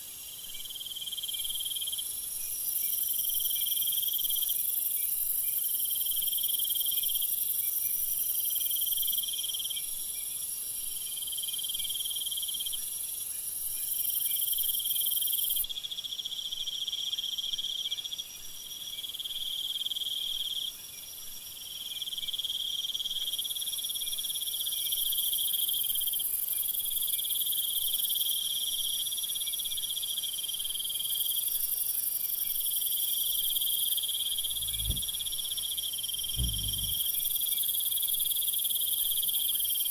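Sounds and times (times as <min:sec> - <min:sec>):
steady high hiss: 0:34.4 - 0:37.4.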